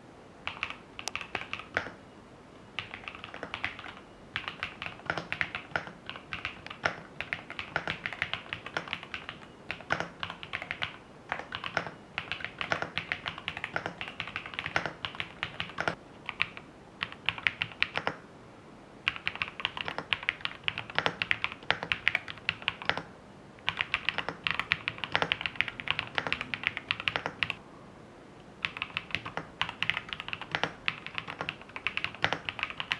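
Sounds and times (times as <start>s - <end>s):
typing on mechanical keyboard: 0.4s - 2.0s, 2.8s - 18.2s, 19.1s - 27.6s, 28.6s - 32.9s.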